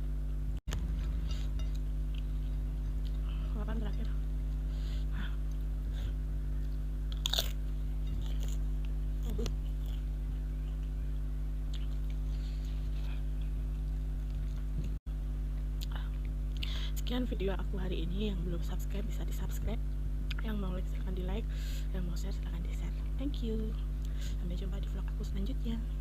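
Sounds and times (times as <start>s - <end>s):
electrical hum: 0.0s - 26.0s
chewing with crunchy bites: 0.8s - 3.4s, 5.4s - 16.7s.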